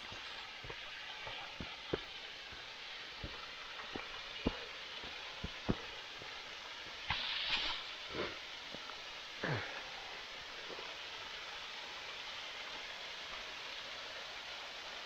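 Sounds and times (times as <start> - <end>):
waterfall rushing: 0.0 - 8.8.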